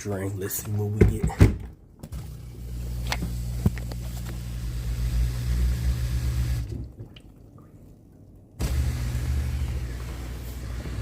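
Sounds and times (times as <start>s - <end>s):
dishwasher drain pump humming: 1.3s - 6.9s, 8.6s - 11.0s.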